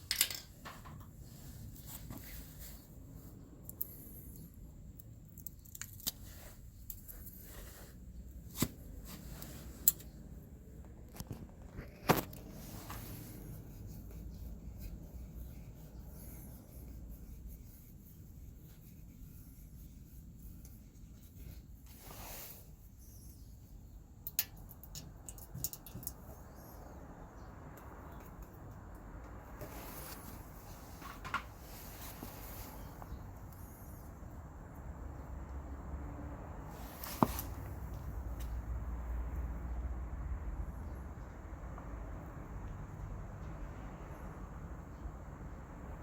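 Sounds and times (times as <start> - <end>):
low steady rumble: 0.0 - 46.0
clicks taps and scrapes of tools: 24.2 - 26.2.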